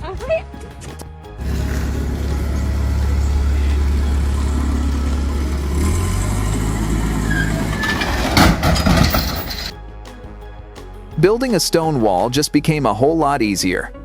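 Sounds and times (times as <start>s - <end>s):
large engine humming: 1.4s - 9.7s
loud crashing knocks: 1.4s - 9.7s.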